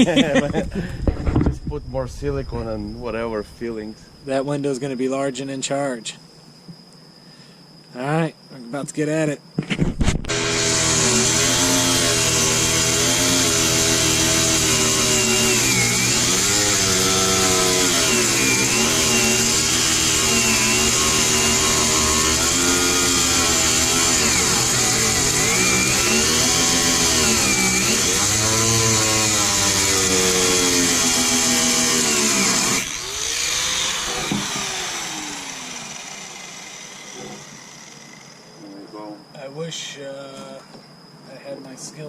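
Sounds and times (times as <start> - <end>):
grinder spinning down whine: 10.2 - 38.8
angle grinder cutting metal: 10.3 - 38.6.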